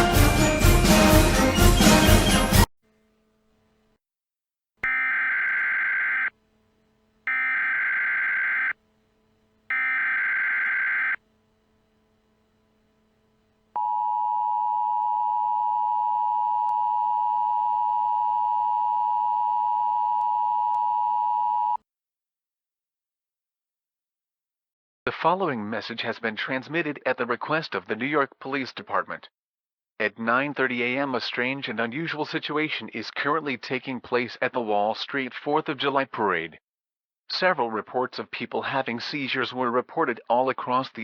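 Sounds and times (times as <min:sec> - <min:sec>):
screeching data bursts: 0:07.3 - 0:08.7, 0:09.7 - 0:11.2
two-tone attention signal: 0:09.7 - 0:11.2.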